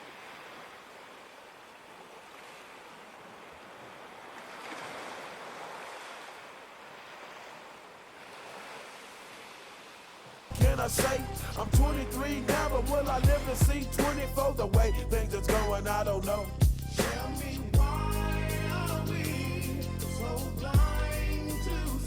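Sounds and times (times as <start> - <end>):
ocean surf washing: 0.0 - 14.6.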